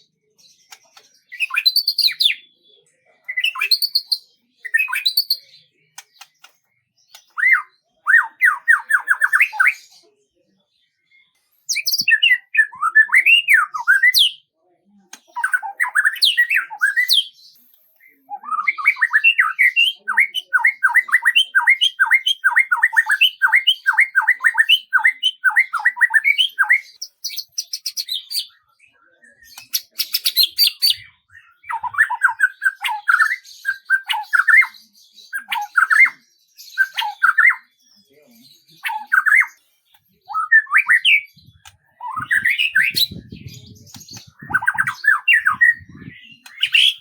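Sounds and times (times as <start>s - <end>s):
songbird singing: 0.0s - 47.0s
bird dry clicking: 6.0s - 7.3s.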